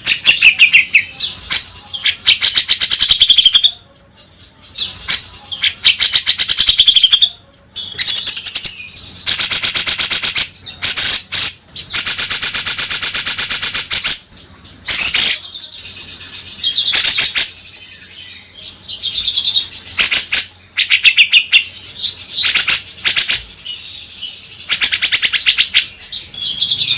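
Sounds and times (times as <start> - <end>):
bird chattering trills: 0.0 - 4.2, 4.8 - 17.8, 18.9 - 26.9.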